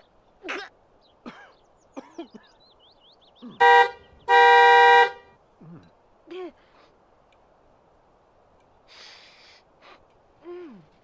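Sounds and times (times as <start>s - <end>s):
two-tone vehicle horn honking: 3.6s - 5.3s.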